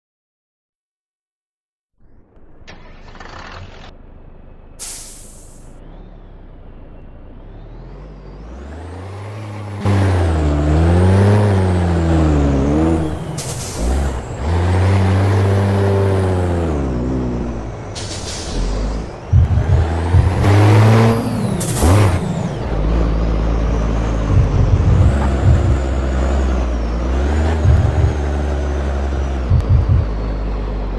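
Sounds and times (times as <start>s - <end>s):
diesel truck engine revving: 2.3s - 30.9s
air hiss bursts: 4.8s - 5.6s.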